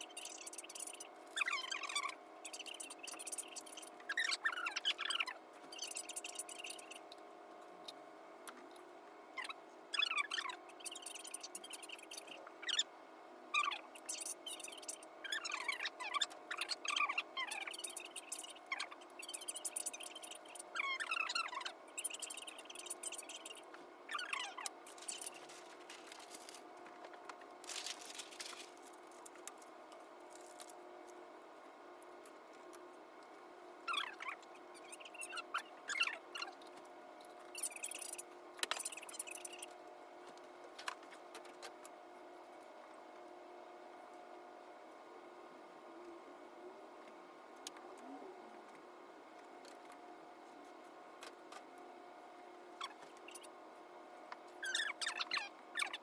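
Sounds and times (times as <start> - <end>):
steady room hum: 0.0 - 56.0
scratchy rustle: 24.9 - 26.7, 27.6 - 29.7.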